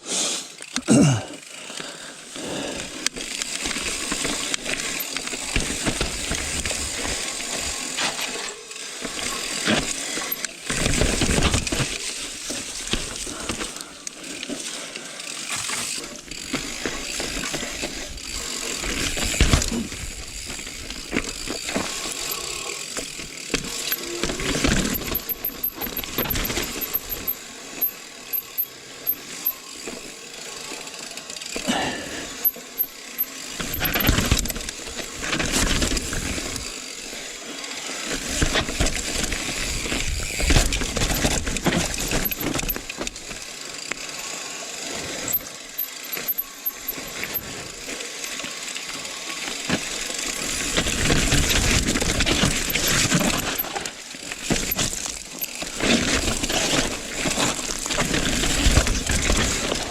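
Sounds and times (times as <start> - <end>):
mountain bike rattling over rocks: 0.9 - 59.9
bike chain slapping: 15.6 - 30.2, 31.5 - 36.8, 38.3 - 44.3, 45.1 - 48.5, 49.7 - 59.9
freewheel hub ticking: 16.2 - 31.7, 32.4 - 35.7, 40.2 - 44.3, 45.2 - 48.4.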